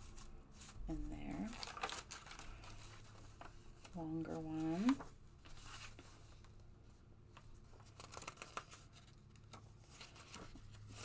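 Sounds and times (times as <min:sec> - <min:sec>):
paper sheets rustling: 0:00.0 - 0:11.0.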